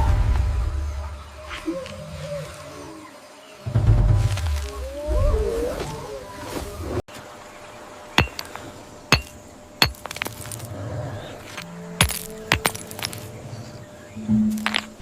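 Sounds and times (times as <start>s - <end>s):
sharp ringing knocks: 8.2s - 8.5s, 9.1s - 10.1s.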